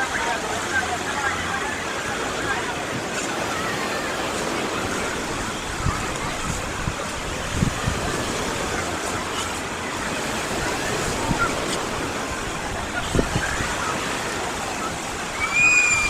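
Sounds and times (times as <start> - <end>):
distant voices: 0.0 - 16.0
surf washing onto beach: 0.0 - 16.0.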